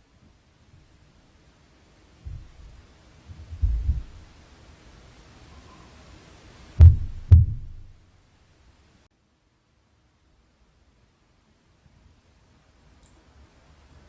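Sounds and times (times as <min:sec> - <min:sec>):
thuds through ceiling: 0:03.5 - 0:04.3, 0:06.8 - 0:08.0.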